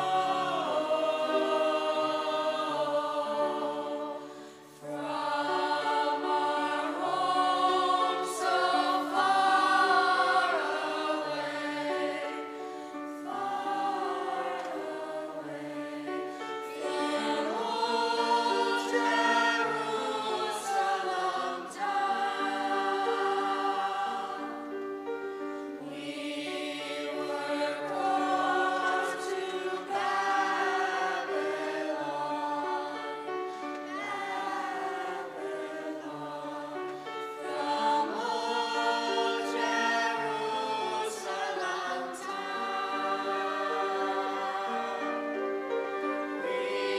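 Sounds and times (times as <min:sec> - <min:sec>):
choir singing: 0:00.0 - 0:46.9.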